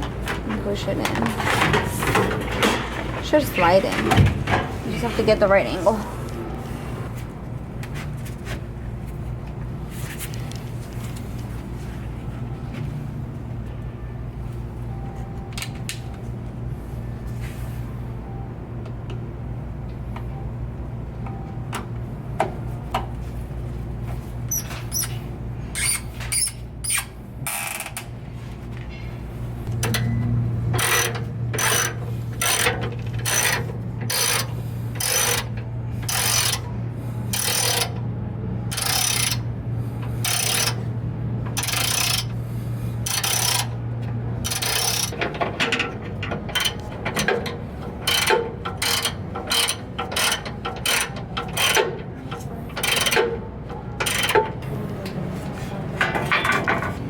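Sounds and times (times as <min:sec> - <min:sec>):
steady low hum: 0:00.0 - 0:57.0
ratchet wrench clicking: 0:30.8 - 0:35.5, 0:36.1 - 0:36.6, 0:37.3 - 0:38.0, 0:38.7 - 0:39.4, 0:40.2 - 0:40.8, 0:41.6 - 0:42.3, 0:43.0 - 0:43.7, 0:44.4 - 0:45.2, 0:48.0 - 0:51.8, 0:52.8 - 0:53.2, 0:54.0 - 0:54.4.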